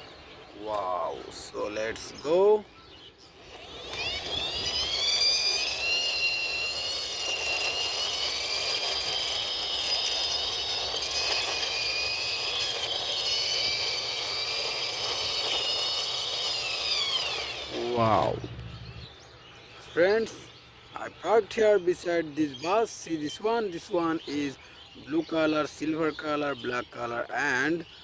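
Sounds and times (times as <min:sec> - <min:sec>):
toy helicopter engine whine: 0:03.4 - 0:19.3.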